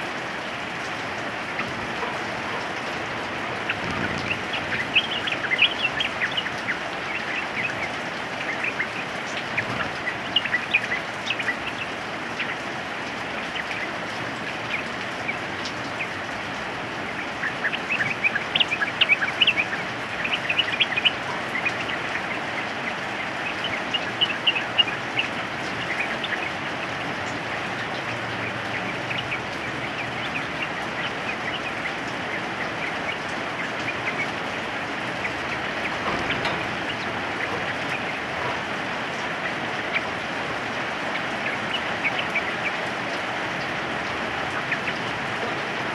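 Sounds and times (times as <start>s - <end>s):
rain hissing: 0.0s - 45.9s
birds calling short sharp notes: 3.6s - 7.9s.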